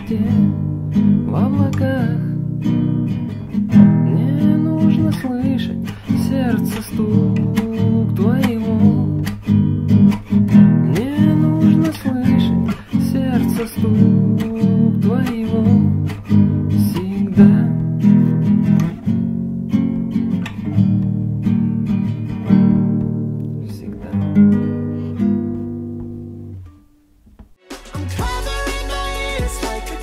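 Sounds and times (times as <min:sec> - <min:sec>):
strummed acoustic guitar: 0:00.0 - 0:30.0.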